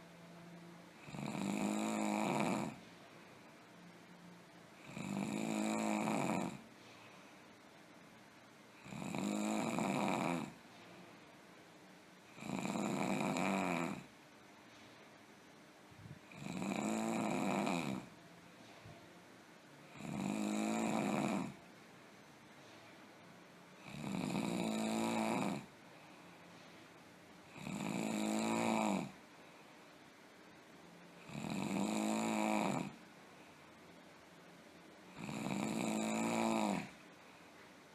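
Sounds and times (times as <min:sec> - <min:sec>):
person snoring: 0:01.0 - 0:02.8, 0:04.8 - 0:06.6, 0:08.8 - 0:10.6, 0:12.3 - 0:14.1, 0:16.2 - 0:18.1, 0:19.9 - 0:21.6, 0:23.8 - 0:25.7, 0:27.4 - 0:29.2, 0:31.2 - 0:33.0, 0:35.1 - 0:37.0.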